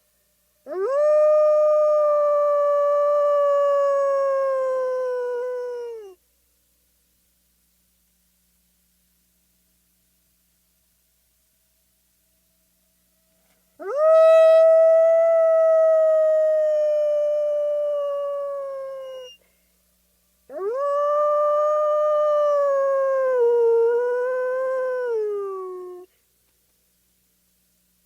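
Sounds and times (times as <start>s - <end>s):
wolf howling: 13.8s - 19.4s, 20.5s - 26.0s.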